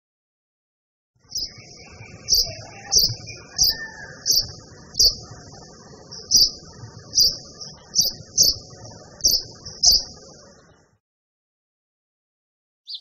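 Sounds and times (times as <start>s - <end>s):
high bird twittering: 1.2s - 10.8s
bird chirping: 1.2s - 11.0s.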